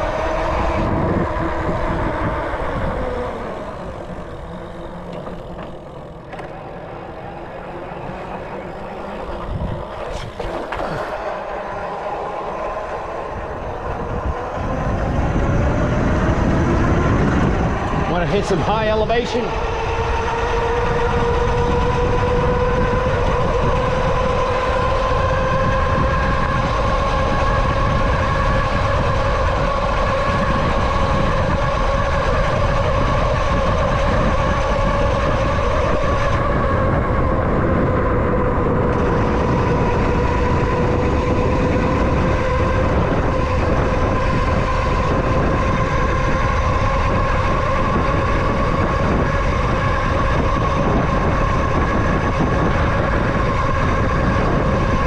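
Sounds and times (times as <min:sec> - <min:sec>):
heavy rumble and rushing: 0:00.0 - 0:55.0
vehicle motor whining: 0:00.0 - 0:55.0.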